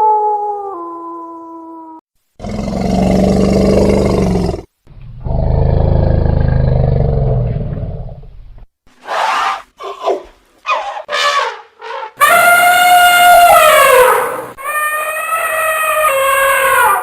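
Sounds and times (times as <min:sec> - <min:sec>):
big cat roaring: 0:02.4 - 0:08.2.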